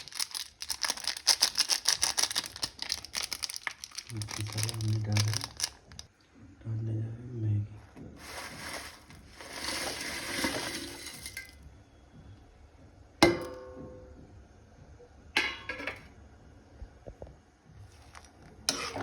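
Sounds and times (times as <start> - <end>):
dry noodles rustling in a pan: 0.0 - 6.1, 8.2 - 11.5.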